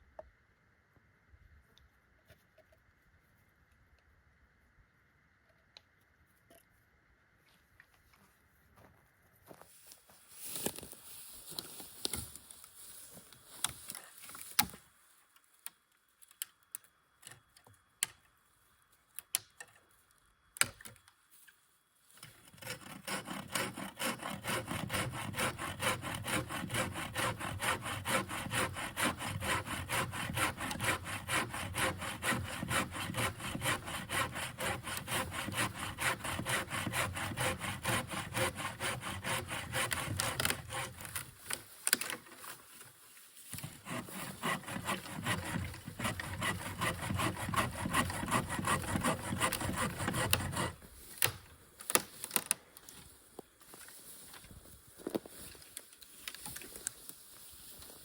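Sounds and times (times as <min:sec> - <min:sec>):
hand saw cutting wood: 0:22.3 - 0:41.6, 0:43.5 - 0:52.0.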